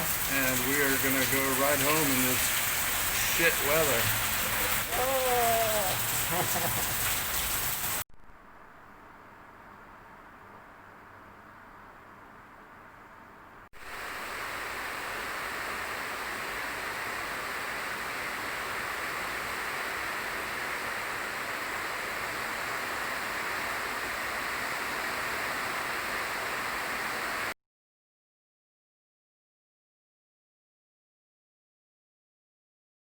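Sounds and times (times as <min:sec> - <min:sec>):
heavy rain falling: 0:00.0 - 0:09.4, 0:13.8 - 0:27.5.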